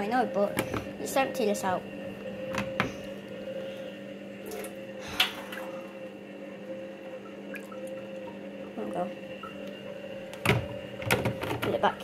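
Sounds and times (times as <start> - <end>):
appliance humming: 0.0 - 12.0
wet squishing and dripping: 4.4 - 5.9, 7.2 - 8.7.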